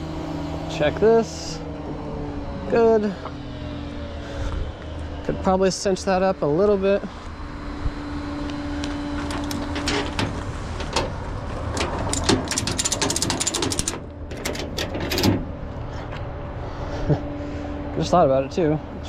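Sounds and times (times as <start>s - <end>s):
steady low hum: 0.0s - 19.0s
ratchet strap clicking: 11.8s - 14.5s.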